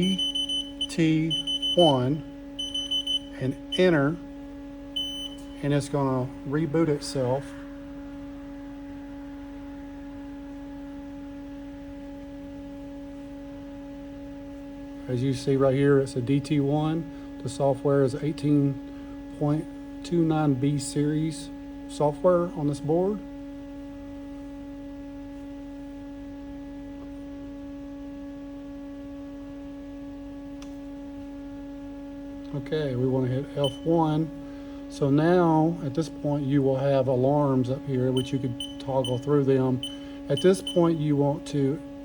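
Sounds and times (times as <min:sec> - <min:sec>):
machine electrical hum: 0:00.0 - 0:42.0.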